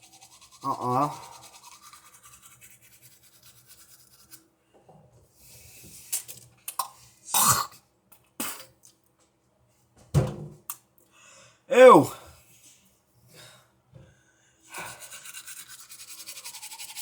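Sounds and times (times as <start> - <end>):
person coughing: 7.4 - 7.7.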